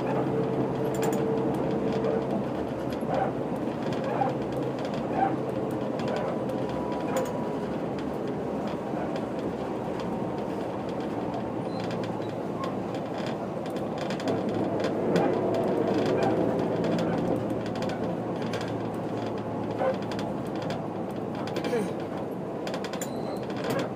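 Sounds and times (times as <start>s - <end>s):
bus diesel engine running: 0.0s - 22.6s
road noise: 0.0s - 23.9s.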